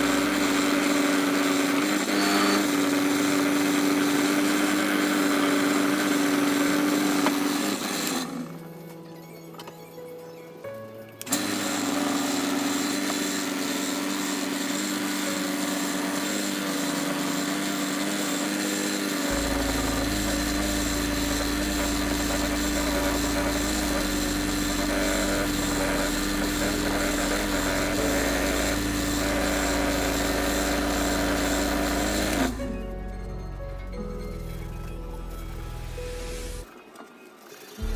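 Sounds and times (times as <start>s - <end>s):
tool cutting spinning wood: 0.0s - 8.7s, 11.3s - 32.8s
wood lathe motor hum: 0.0s - 8.9s, 11.2s - 33.6s, 34.2s - 36.7s.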